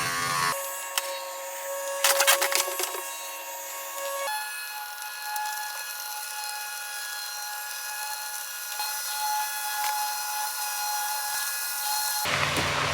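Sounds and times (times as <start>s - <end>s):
small electric motor whining: 0.0s - 12.9s.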